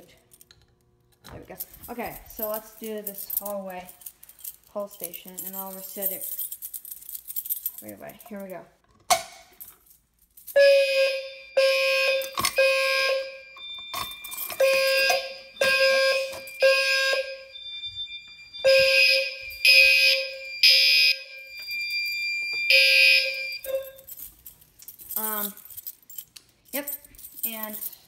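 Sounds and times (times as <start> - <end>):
fire alarm horn blasts: 10.6 - 24.0
thin high beep: 13.0 - 24.0.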